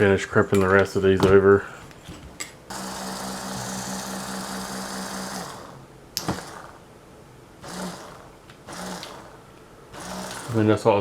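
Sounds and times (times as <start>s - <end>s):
electric pump motor humming and rattling: 2.7s - 6.9s, 7.6s - 11.0s.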